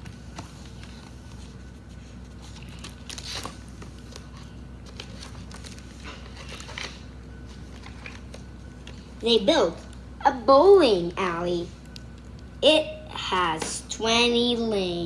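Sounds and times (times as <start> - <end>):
paper book rustling: 0.0 - 9.0.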